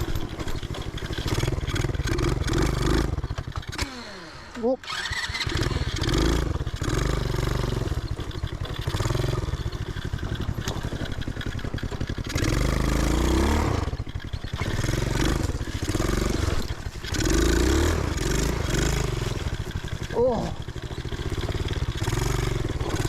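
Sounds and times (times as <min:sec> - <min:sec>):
machine rattling: 0:00.0 - 0:03.8
small engine revving: 0:00.0 - 0:23.0.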